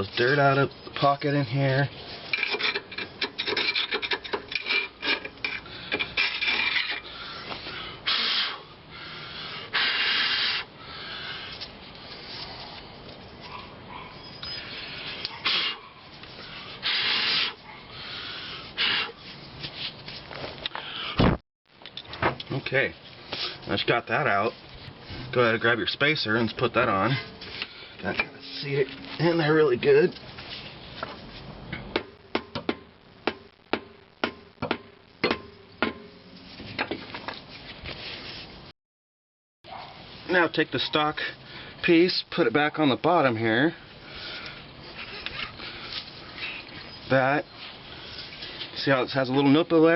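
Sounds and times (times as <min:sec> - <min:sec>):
rubbing and scraping: 0:00.0 - 0:07.0, 0:22.6 - 0:31.6
hammer striking metal: 0:31.9 - 0:36.2.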